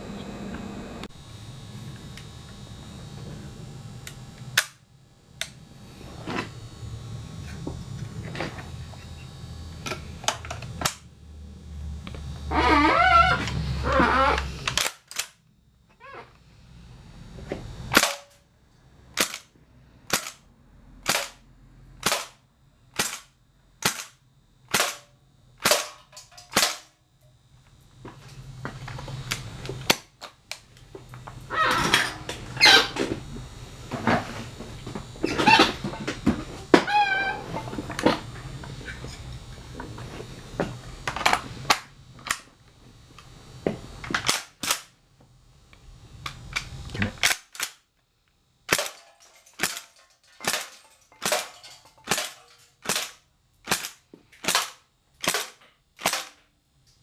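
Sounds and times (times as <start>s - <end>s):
low hum: 0.0s - 44.1s.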